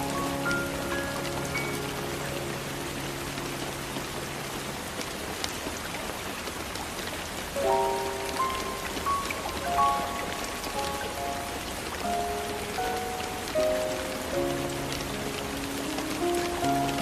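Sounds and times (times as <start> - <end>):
held music notes: 0.0 - 5.0
steady rain falling: 0.0 - 17.0.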